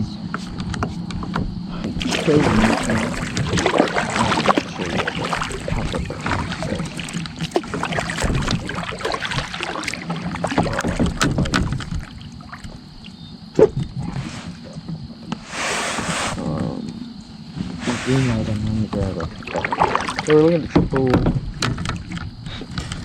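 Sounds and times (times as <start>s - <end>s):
water splashing: 1.9s - 13.2s, 17.8s - 22.3s
knocks against kayak hull: 7.4s - 8.8s, 10.4s - 12.2s, 20.6s - 23.0s.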